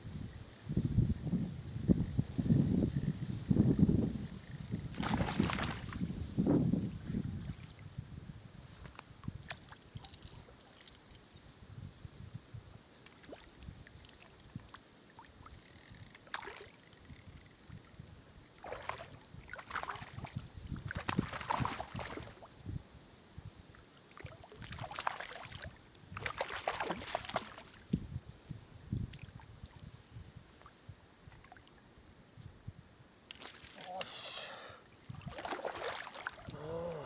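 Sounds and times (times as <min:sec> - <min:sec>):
stream water splashing: 0:04.9 - 0:06.1, 0:16.2 - 0:16.8, 0:18.6 - 0:22.5, 0:24.1 - 0:27.8, 0:33.3 - 0:36.6.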